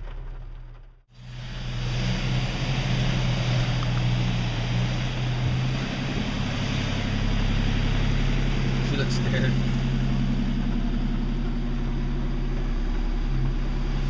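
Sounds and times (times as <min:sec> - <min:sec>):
car engine humming: 0:00.0 - 0:14.0
loud rushing wash: 0:01.2 - 0:10.5.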